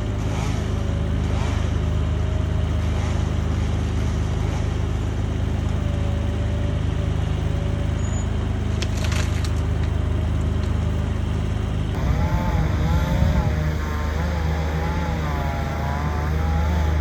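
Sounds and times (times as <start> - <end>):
heavy engine running: 0.0 - 17.0
wood splintering: 12.0 - 17.0.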